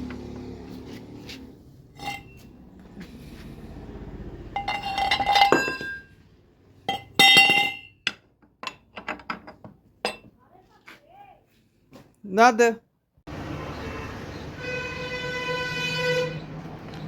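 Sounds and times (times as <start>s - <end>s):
metal parts clinking: 4.6s - 6.1s
ringing metallic clangs: 4.6s - 6.2s, 6.9s - 8.2s.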